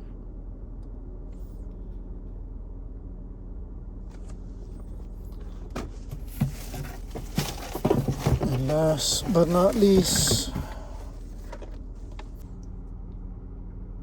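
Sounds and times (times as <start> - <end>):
low background hum: 0.0 - 14.0
products clicking and rustling: 5.7 - 12.4.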